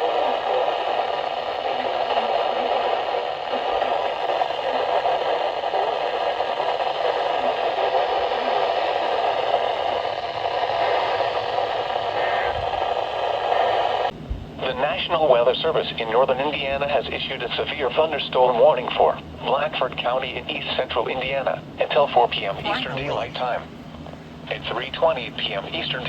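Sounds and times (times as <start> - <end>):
radio static hiss: 0.0 - 26.0.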